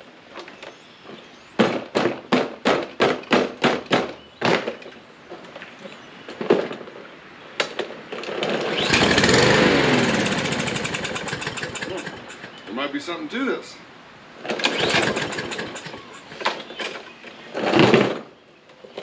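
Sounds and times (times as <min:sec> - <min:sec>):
mower engine pull-started: 0:08.2 - 0:12.7, 0:14.4 - 0:18.3.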